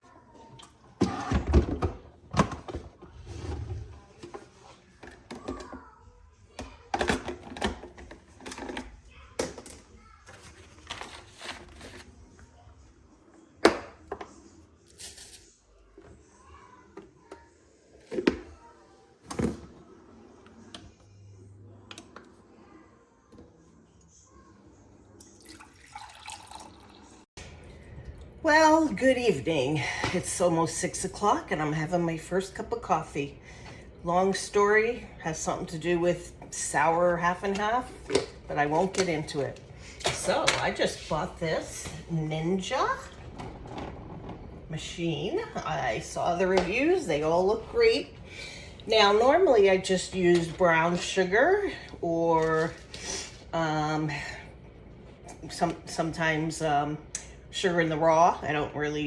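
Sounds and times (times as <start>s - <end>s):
knocks and clatter of handling: 6.6s - 12.0s, 43.2s - 44.6s
running liquid: 25.3s - 28.4s.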